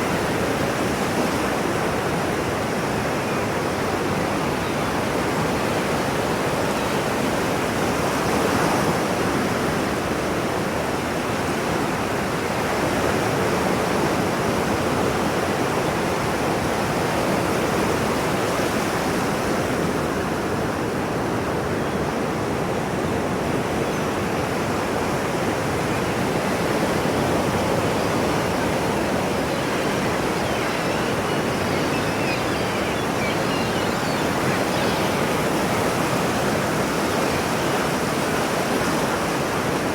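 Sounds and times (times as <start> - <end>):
ocean surf rushing: 24.8 - 39.9.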